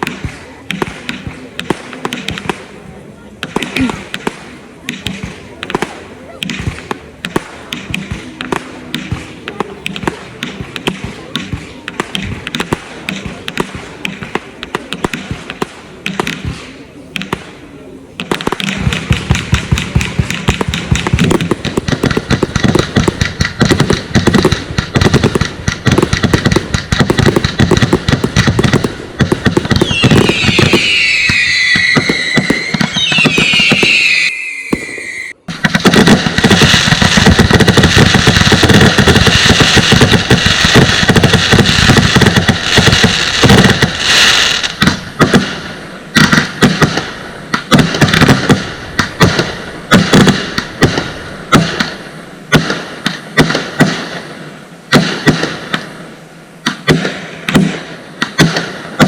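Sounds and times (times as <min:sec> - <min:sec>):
firework bangs and crackles: 0:00.0 - 0:59.0
falling firework whistles: 0:29.8 - 0:35.5.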